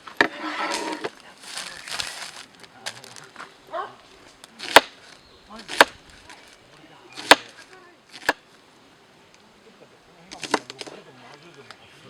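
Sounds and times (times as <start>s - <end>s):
chopping strikes on wood: 4.4s - 6.4s, 7.2s - 8.4s, 10.4s - 10.9s.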